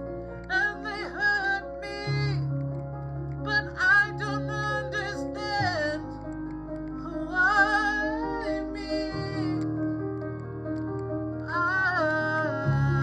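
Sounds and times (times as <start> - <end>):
person singing wordless notes: 11.4 - 13.0.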